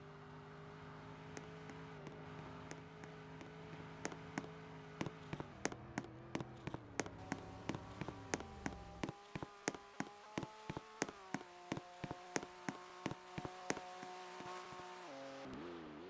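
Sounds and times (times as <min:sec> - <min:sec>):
sharp ticks: 0:01.4 - 0:14.8.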